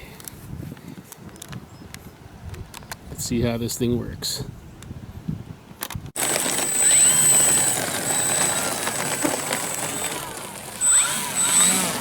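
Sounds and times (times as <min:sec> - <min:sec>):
wind buffeting microphone: 0:00.0 - 0:12.0
electric motor and propeller whine: 0:06.2 - 0:12.0.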